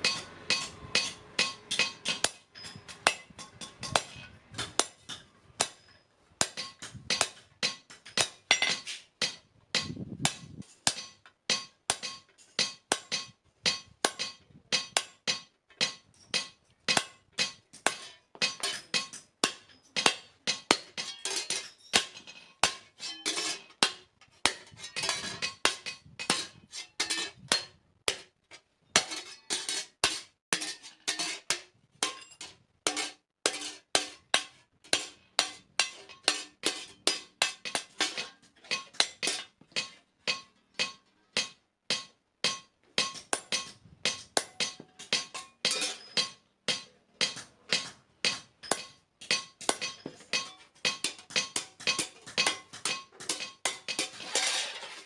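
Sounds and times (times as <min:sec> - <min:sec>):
anvil ringing: 0:00.0 - 0:10.0, 0:34.0 - 0:54.8
hammer striking steel on anvil: 0:00.0 - 0:28.4, 0:29.0 - 0:55.0.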